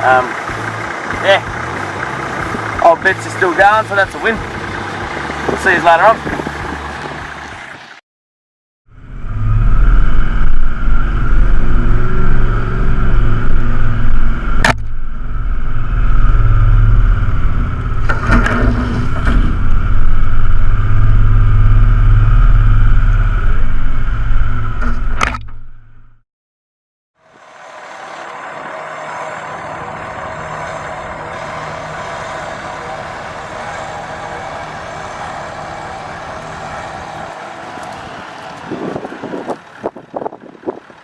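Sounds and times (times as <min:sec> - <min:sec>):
vehicle engine running loudly: 0:00.0 - 0:08.0, 0:27.2 - 0:41.0.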